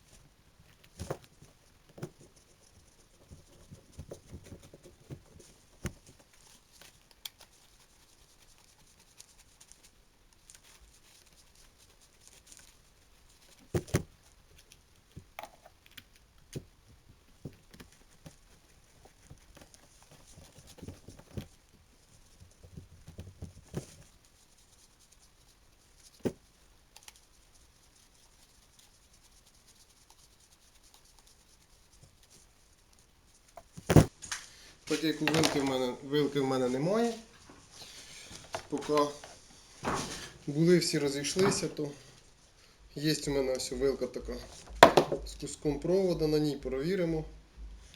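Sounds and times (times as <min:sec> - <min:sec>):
drill parts being handled: 0:33.6 - 0:42.2, 0:44.3 - 0:45.3.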